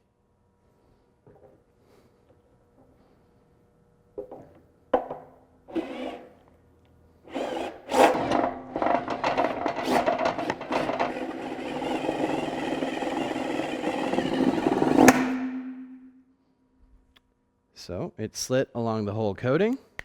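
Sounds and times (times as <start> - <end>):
low machine hum: 0.0 - 19.5
wire stripping machine running: 7.3 - 15.4
loud click: 15.0 - 16.0.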